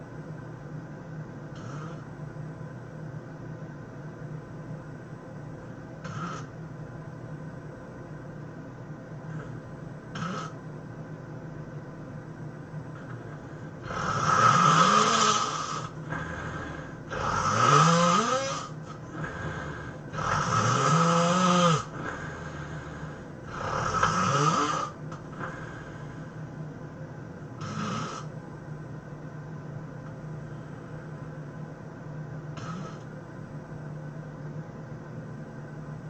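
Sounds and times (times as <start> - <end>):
person snoring: 1.5 - 2.1, 6.0 - 6.5, 10.2 - 10.6, 13.0 - 26.3, 27.6 - 28.3, 32.6 - 33.1.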